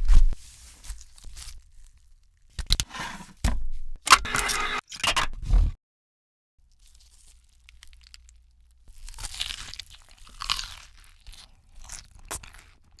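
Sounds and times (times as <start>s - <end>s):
crunchy food chewing: 6.7s - 13.0s.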